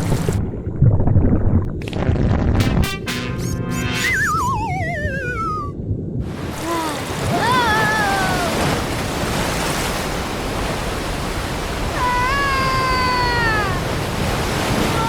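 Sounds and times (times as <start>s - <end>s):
falling whistle-like tone: 3.4s - 5.8s.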